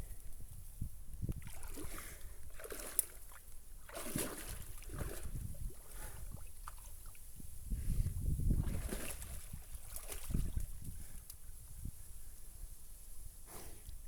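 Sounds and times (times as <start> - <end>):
wind rumble on microphone: 0.0 - 2.6, 4.4 - 14.0
water sloshing and splashing: 1.3 - 7.2, 8.4 - 10.8.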